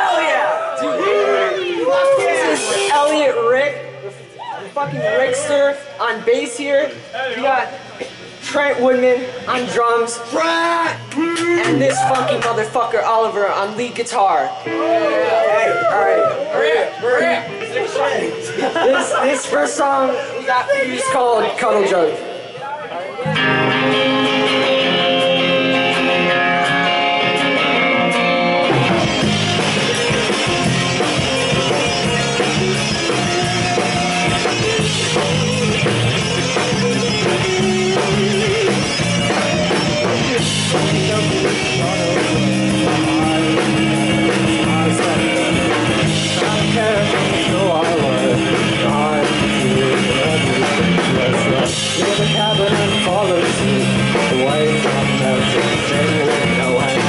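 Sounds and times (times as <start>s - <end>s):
bass guitar: 0.0s - 19.5s, 21.8s - 57.0s
electric guitar: 0.0s - 57.0s
drum kit: 23.3s - 57.0s.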